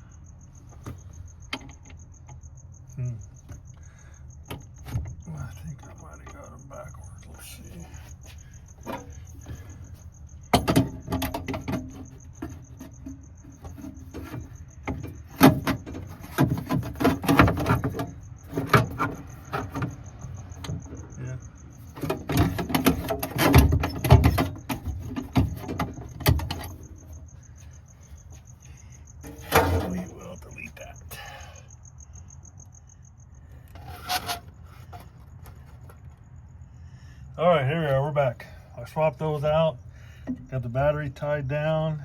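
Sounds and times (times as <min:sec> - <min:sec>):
hand tools and metal parts clanking: 0:04.4 - 0:31.8, 0:33.7 - 0:36.2.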